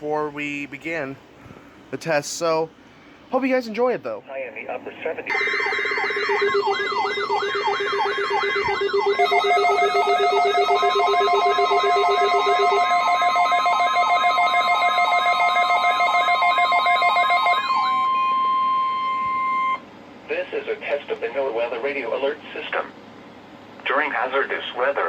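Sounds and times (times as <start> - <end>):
steady beeps: 5.3 - 13.8, 17.7 - 19.8
steady warning alert tone: 5.3 - 15.5
warbling alert alarms: 5.3 - 19.8.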